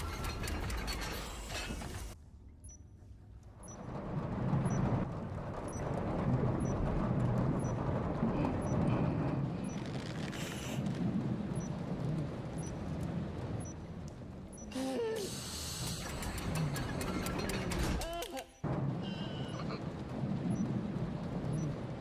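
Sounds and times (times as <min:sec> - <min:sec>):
stomach growl rumbling: 0:04.3 - 0:13.3.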